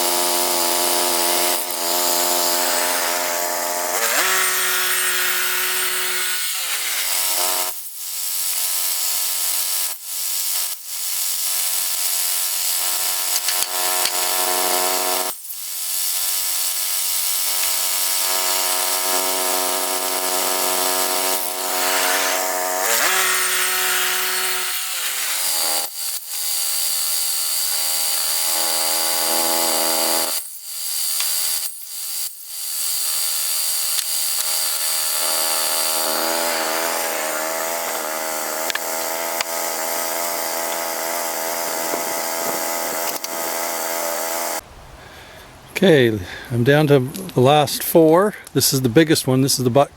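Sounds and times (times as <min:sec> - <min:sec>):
sawmill engine running: 0:00.0 - 0:07.7, 0:11.5 - 0:15.3, 0:17.3 - 0:30.3, 0:33.2 - 0:44.6
blade sawing through log: 0:00.0 - 0:10.6, 0:11.3 - 0:44.6.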